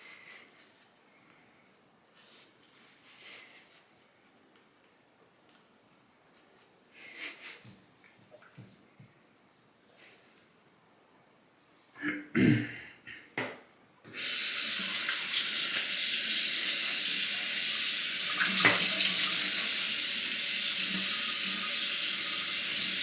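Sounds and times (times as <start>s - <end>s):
tap water running into sink: 14.1s - 23.0s.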